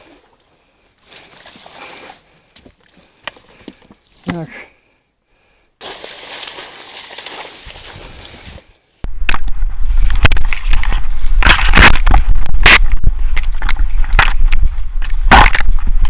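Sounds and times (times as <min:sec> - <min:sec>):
dry reeds crackling and snapping: 0:05.8 - 0:08.4.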